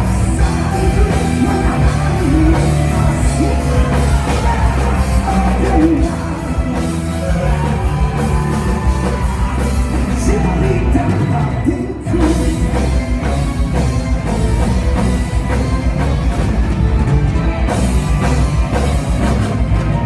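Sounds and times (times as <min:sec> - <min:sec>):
lead singer singing: 0:00.0 - 0:15.8
rock band playing live: 0:00.0 - 0:20.0.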